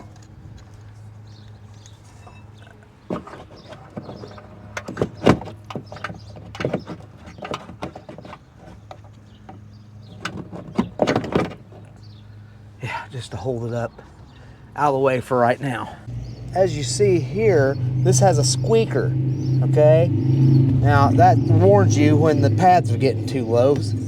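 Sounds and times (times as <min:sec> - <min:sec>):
metal brake parts clanking: 0:00.0 - 0:12.1
steady low hum: 0:11.6 - 0:24.0.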